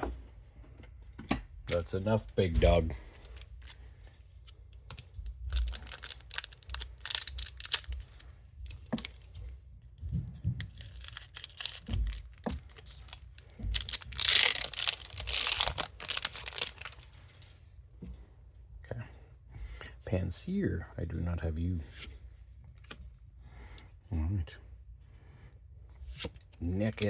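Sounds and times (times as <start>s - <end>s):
foil wrapper crinkling and tearing: 4.8s - 9.3s, 10.6s - 17.3s.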